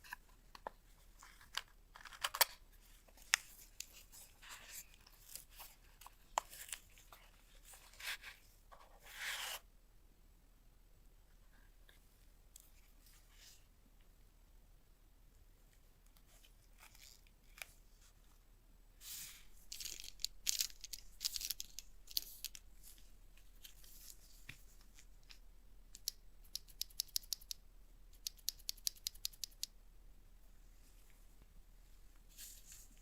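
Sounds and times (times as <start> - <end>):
sharp evenly spaced clicks: 26.0 - 29.7.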